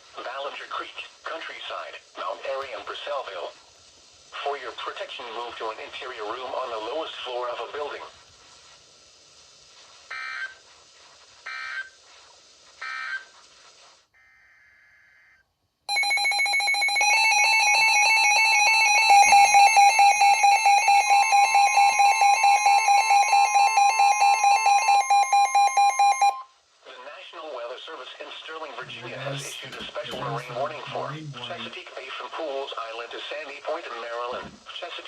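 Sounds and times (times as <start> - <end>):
short digital data bursts: 15.9 - 26.4
electronic alarm beeping: 15.9 - 26.5
second alarm tone: 15.9 - 26.5.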